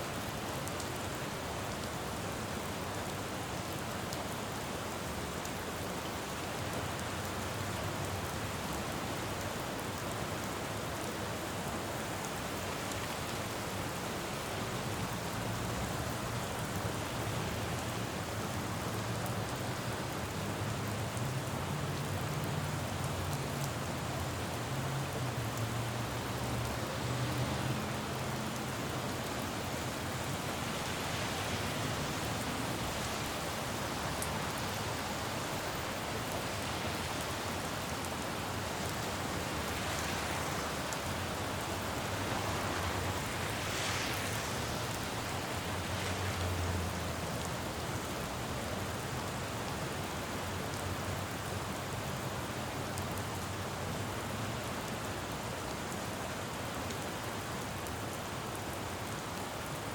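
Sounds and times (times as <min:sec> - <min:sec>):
rain on road: 0:00.0 - 0:59.9
passing traffic hum: 0:13.0 - 0:48.6.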